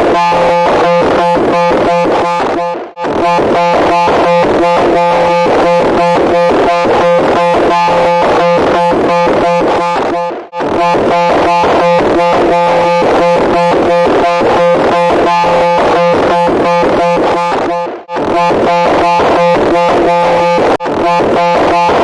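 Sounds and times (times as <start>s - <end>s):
harsh pulsing electronic buzz: 0.0s - 22.0s.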